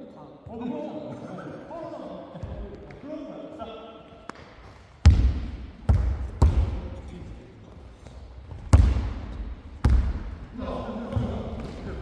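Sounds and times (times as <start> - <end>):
basketball bouncing on court floor: 5.0 - 7.1, 8.0 - 12.0.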